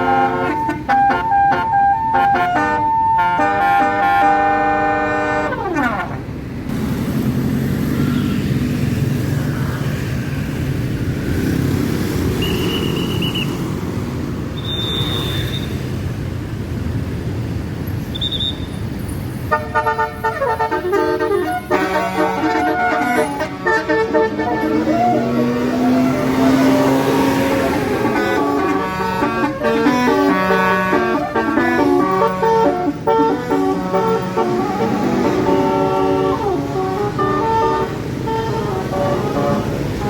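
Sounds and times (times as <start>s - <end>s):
bus musical horn playing a tune: 0.0s - 6.4s, 19.5s - 40.0s
bus engine running: 0.0s - 9.5s, 19.5s - 40.0s
short high whistle-like tones: 12.4s - 13.6s, 14.6s - 15.8s, 18.1s - 18.8s.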